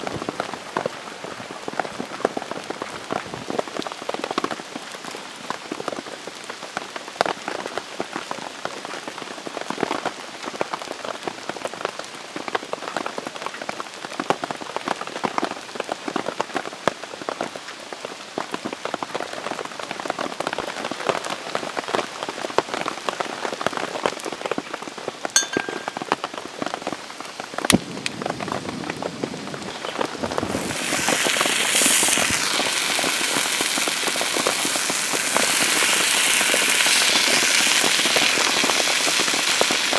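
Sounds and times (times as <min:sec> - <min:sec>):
rain pattering on a surface: 0:00.0 - 0:24.8, 0:27.8 - 0:39.9
steady hiss: 0:26.8 - 0:39.9.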